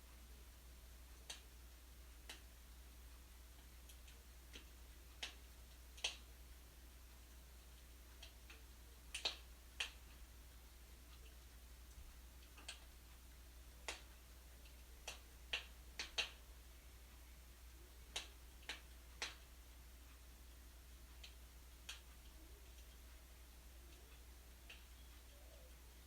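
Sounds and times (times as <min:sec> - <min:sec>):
wood fire crackling and popping: 0:07.2 - 0:10.1.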